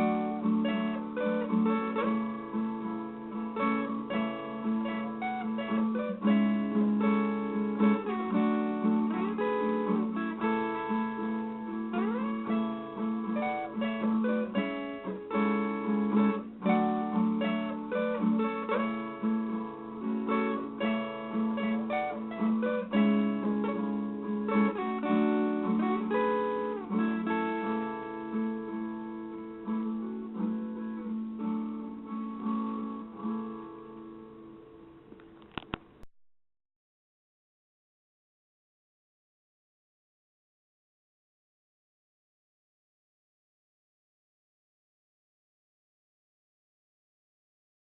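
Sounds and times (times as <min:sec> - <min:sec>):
plucked folk guitar tune: 0:00.0 - 0:36.0.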